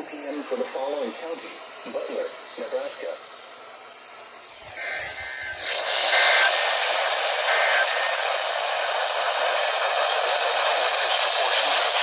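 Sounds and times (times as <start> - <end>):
radio static hiss: 0.0 - 12.0
faint two-pitch data tones: 4.7 - 6.6.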